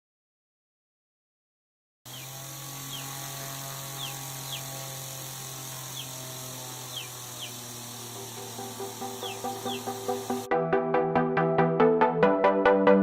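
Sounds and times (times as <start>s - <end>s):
small electric motor humming: 2.1s - 10.5s.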